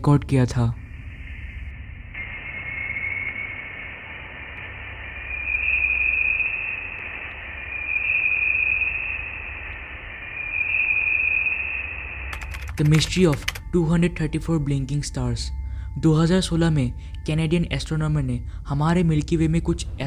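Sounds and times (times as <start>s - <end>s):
low rumble: 0.0s - 12.4s
high hissing hum: 0.0s - 20.0s.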